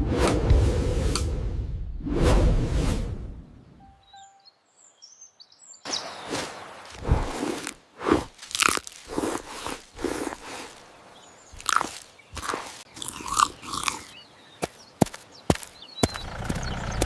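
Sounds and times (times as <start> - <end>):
faint high bird chirps: 3.6 - 6.7, 13.5 - 17.0
crunchy chewing: 6.9 - 17.0.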